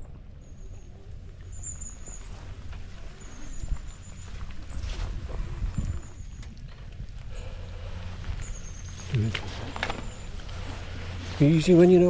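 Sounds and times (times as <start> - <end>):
wind buffeting microphone: 0.0 - 12.0
footsteps on rough trail: 1.1 - 12.0.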